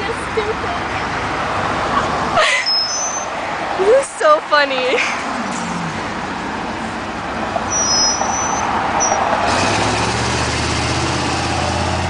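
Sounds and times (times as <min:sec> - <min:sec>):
busy street traffic: 0:00.0 - 0:12.0
brief high squeals: 0:02.5 - 0:03.3, 0:07.7 - 0:09.2
heavy vehicle engine running: 0:05.2 - 0:12.0.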